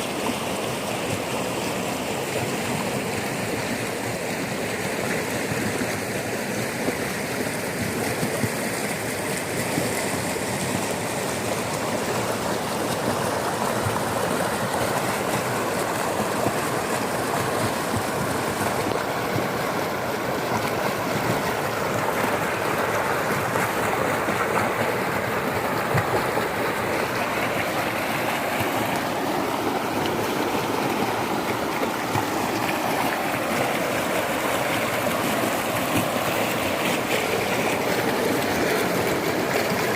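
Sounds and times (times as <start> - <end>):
floodwater rushing: 0.0 - 39.9.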